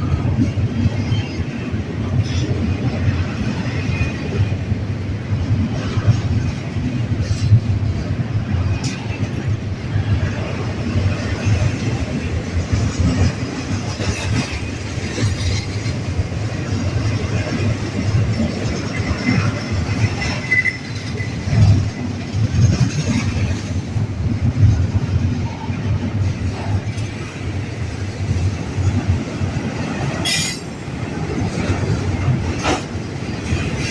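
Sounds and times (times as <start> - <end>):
freight train cars rumbling: 0.0 - 33.9
high wheel squeal: 30.2 - 30.9.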